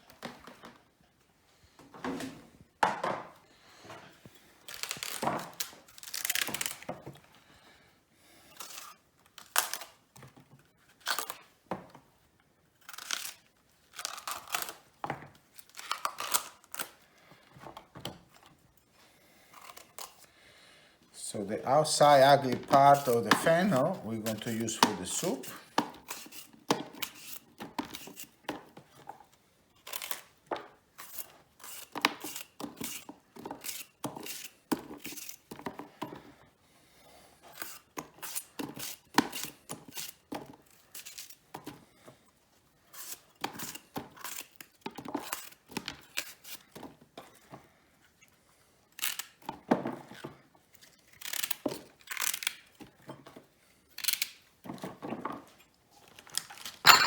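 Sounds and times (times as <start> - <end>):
fennel layers torn and cut: 4.7 - 6.9, 8.5 - 10.1, 10.9 - 11.5, 12.8 - 17.0, 19.5 - 20.3, 22.9 - 28.4, 29.8 - 30.4, 31.0 - 35.5, 37.5 - 41.4, 42.9 - 46.7, 48.9 - 52.9, 53.9 - 54.5.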